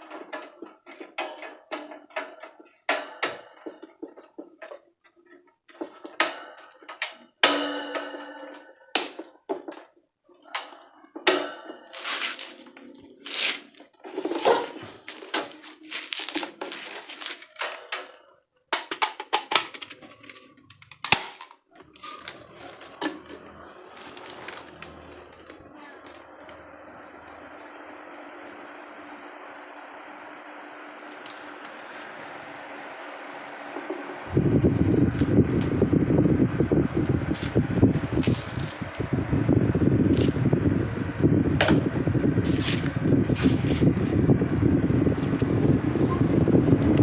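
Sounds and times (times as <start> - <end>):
desk fan whirring: 0.0 - 47.0
packaging rustling: 12.0 - 17.9, 19.6 - 26.6
plastic parts clicking together: 15.3 - 26.6.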